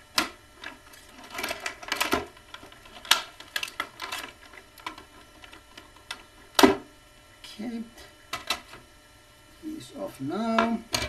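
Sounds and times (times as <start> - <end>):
plastic packaging crackling and clicking: 0.6 - 6.8.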